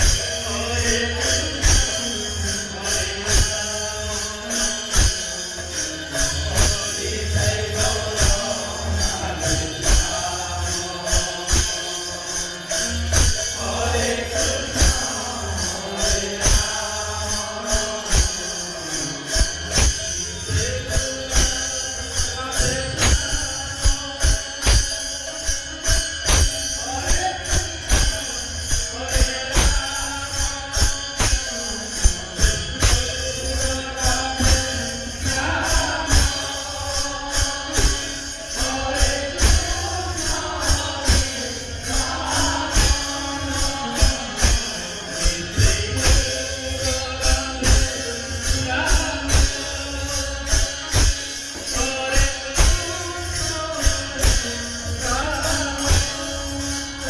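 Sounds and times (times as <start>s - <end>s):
jingling percussion: 0.0s - 57.0s
person singing a chant: 0.0s - 57.0s
drum beat: 26.3s - 28.3s, 29.1s - 33.1s.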